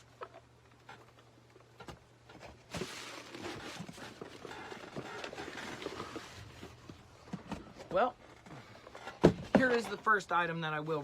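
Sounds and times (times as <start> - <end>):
packaging rustling: 2.3 - 7.1.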